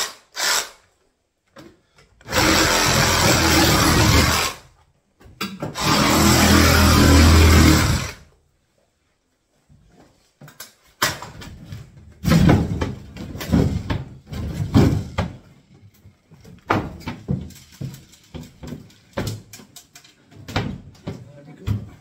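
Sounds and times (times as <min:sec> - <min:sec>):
cabinets knocked and banged apart: 0:10.4 - 0:15.6, 0:16.3 - 0:22.0.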